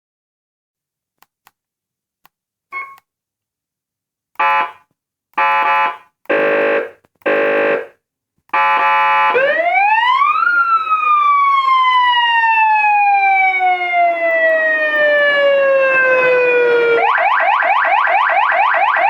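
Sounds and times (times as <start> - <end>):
short beep: 2.7 - 3.0
buzzy horn blasts: 4.4 - 4.8, 5.4 - 9.4
rising siren wail: 8.8 - 19.0.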